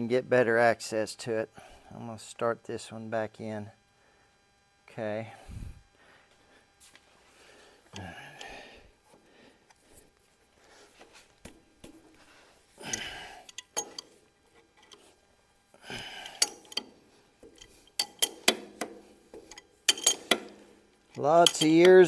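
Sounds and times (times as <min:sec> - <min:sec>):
wrench and bolts clinking: 0:12.9 - 0:14.2, 0:16.2 - 0:18.8, 0:19.4 - 0:22.0
metal scraping: 0:19.4 - 0:22.0.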